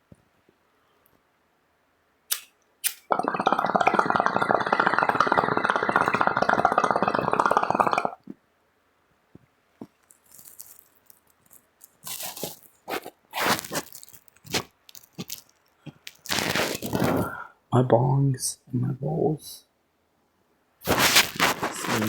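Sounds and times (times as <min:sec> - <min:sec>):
crackly rustling and scraping: 0:09.8 - 0:17.3, 0:20.8 - 0:22.0.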